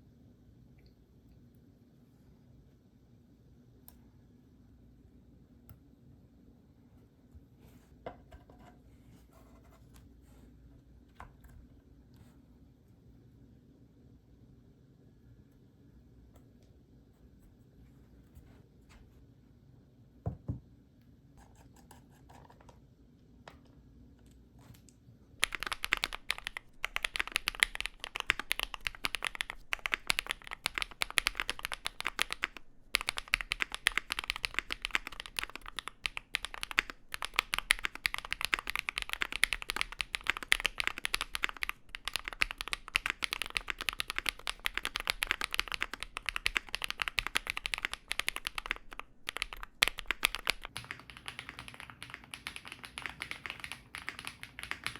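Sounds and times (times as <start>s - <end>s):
mechanical keyboard typing: 25.4s - 54.9s.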